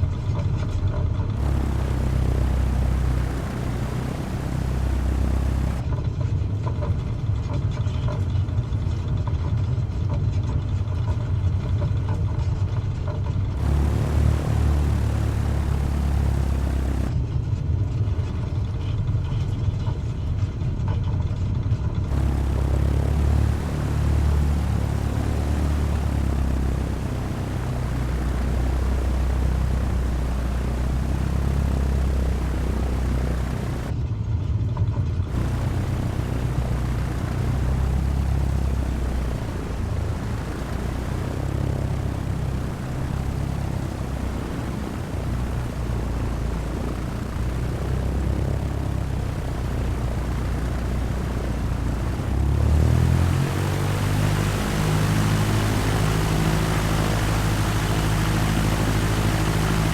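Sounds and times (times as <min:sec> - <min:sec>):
propeller plane engine droning: 0:01.4 - 0:05.9, 0:13.6 - 0:17.2, 0:22.1 - 0:33.9, 0:35.3 - 0:59.9.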